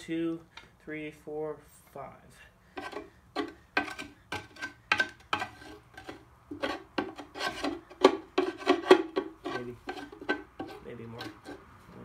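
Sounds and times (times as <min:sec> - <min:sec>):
hand scraper rasping on metal: 0:02.8 - 0:11.7.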